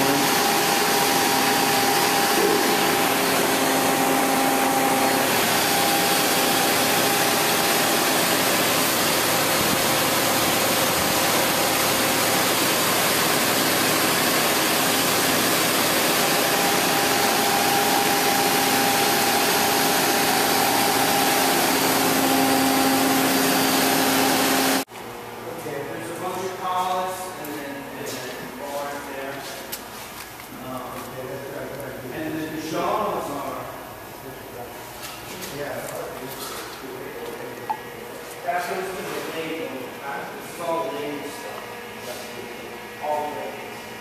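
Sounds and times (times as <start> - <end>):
lathe mechanical whir: 0.0 - 24.9.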